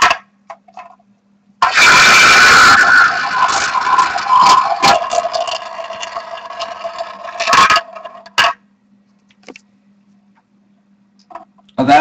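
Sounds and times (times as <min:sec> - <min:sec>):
roulette ball rolling and rattling: 0:00.0 - 0:01.0, 0:03.0 - 0:08.6.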